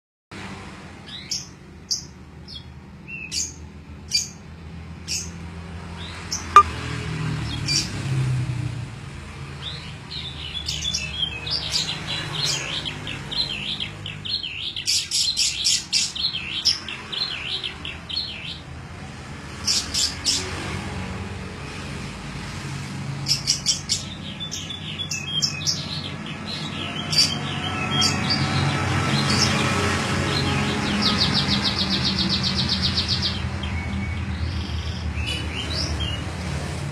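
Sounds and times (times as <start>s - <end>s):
canary singing: 23.3s - 29.6s.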